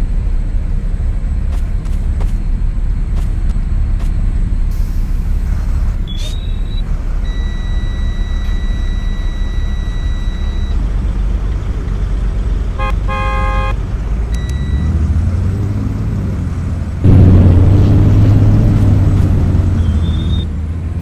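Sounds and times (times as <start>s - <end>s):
bus engine idling: 0.0s - 21.0s
bus horn: 12.7s - 14.0s, 17.2s - 20.6s.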